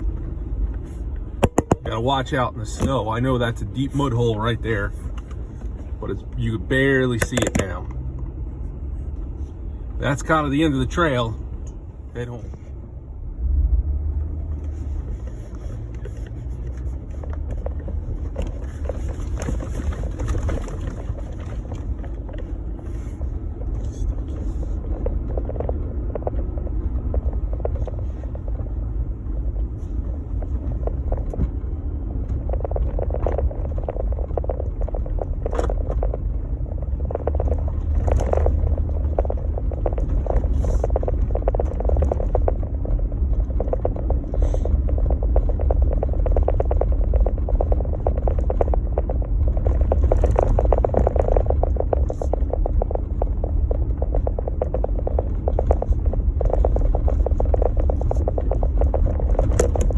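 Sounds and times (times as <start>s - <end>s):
engine and tyres rumbling: 0.0s - 59.9s
snow crackling under tyres: 13.9s - 59.9s.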